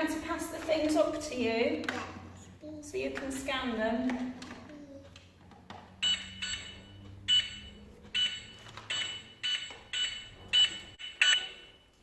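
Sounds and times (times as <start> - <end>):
toy barcode scanner beeping: 6.0 - 11.8.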